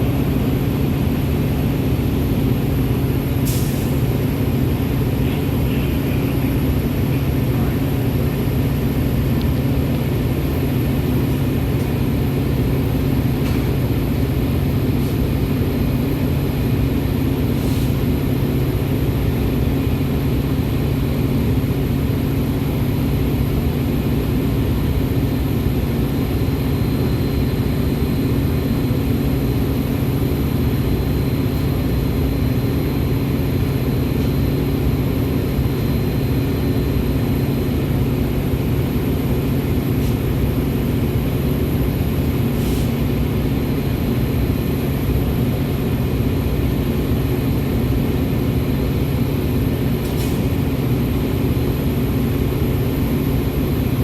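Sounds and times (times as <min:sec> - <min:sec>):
train rumbling: 0:00.0 - 0:54.0.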